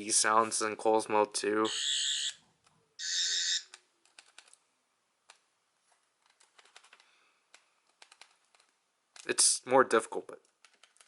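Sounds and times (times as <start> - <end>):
toy warbling electronic buzz: 1.7 - 2.4, 3.0 - 3.6.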